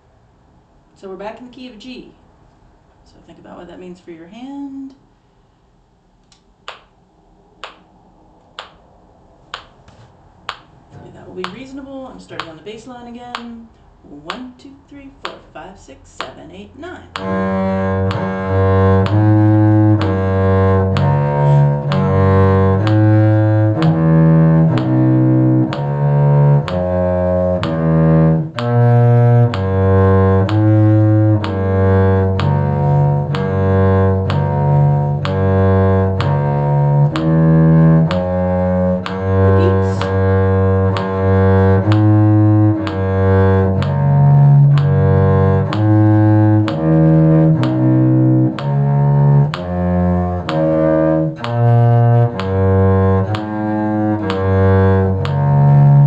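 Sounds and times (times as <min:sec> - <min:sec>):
cello bowing low notes: 0:16.2 - 0:56.0.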